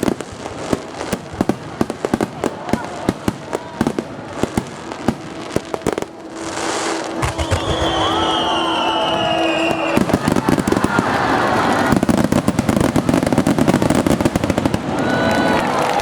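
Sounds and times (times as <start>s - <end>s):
crackling firework bursts: 0.0s - 16.0s
whistling firework shells: 5.8s - 16.0s.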